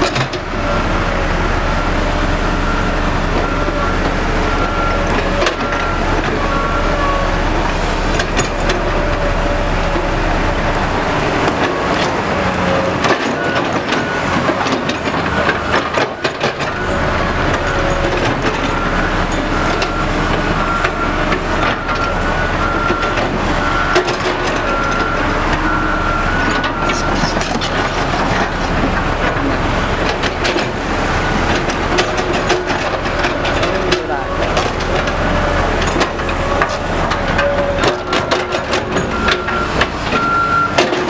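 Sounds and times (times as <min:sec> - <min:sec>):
heavy diesel machinery running: 0:00.0 - 0:41.0
clanking and knocking: 0:08.2 - 0:41.0.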